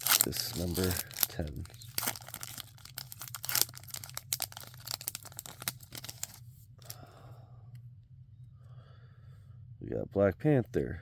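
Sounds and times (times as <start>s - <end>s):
card pack wrapper tearing: 0.0s - 7.0s.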